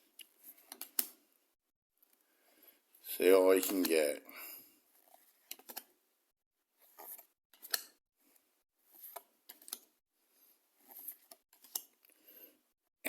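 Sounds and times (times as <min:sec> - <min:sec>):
cards sliding and scraping: 0:00.4 - 0:01.2, 0:03.6 - 0:04.0, 0:04.9 - 0:05.9, 0:06.8 - 0:09.9, 0:10.8 - 0:12.0.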